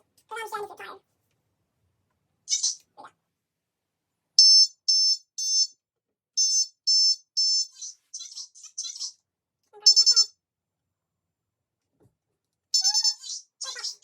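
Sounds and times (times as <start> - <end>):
smoke alarm beeping: 4.4 - 5.8, 6.4 - 9.0.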